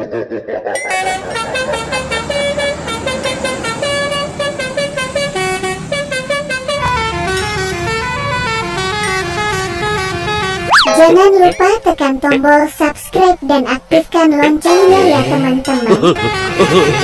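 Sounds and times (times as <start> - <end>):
bus horn playing a tune: 0.9 - 11.1, 15.8 - 17.0.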